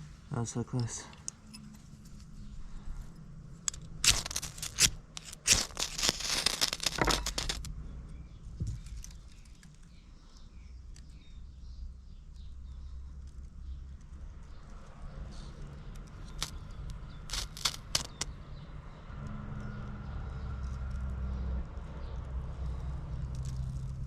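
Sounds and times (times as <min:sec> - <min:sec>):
ferro rod scraping: 0:03.7 - 0:07.7, 0:16.3 - 0:18.3.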